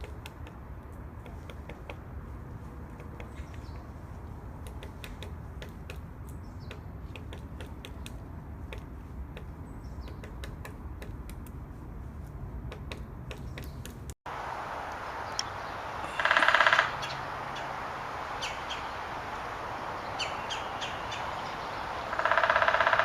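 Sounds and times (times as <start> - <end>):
woodpecker pecking at wood: 0.0 - 14.2, 22.1 - 23.0
faint high bird call: 15.3 - 17.7.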